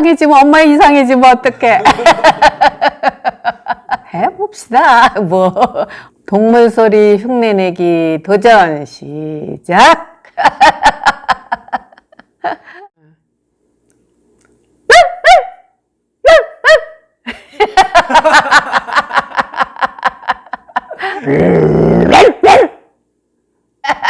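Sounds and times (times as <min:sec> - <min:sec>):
rough vocal sound: 0:21.0 - 0:22.2
person imitating animal calls: 0:21.2 - 0:22.7.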